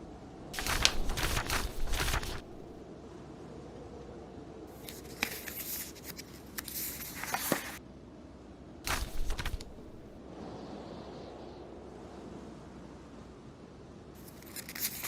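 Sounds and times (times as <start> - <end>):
low storm wind: 0.0 - 5.4, 7.8 - 14.4
book pages turning: 0.6 - 2.8, 4.8 - 7.8, 8.9 - 10.2, 14.2 - 15.0.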